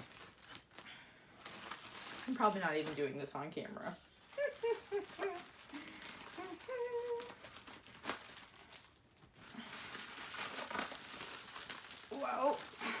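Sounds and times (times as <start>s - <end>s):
bubble wrap crinkling: 0.0s - 13.0s
faint voice murmuring: 6.3s - 7.4s.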